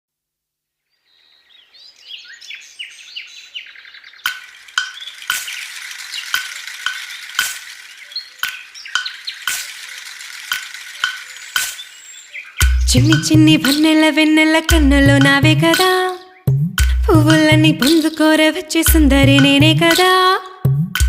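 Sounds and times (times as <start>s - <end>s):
parrots chirping and chattering: 2.7s - 12.8s.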